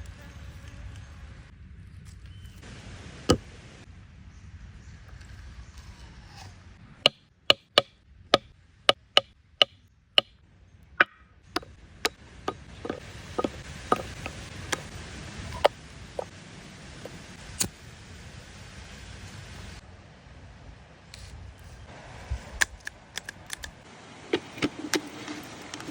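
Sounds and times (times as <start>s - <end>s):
sharp chopping strikes: 7.1s - 9.1s.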